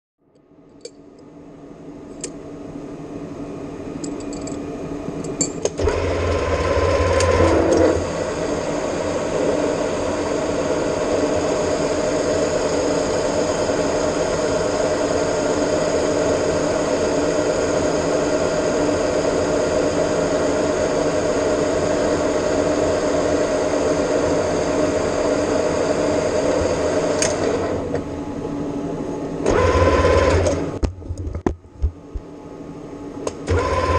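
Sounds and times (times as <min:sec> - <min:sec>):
metal lathe running: 0:29.5 - 0:30.6, 0:33.5 - 0:33.9.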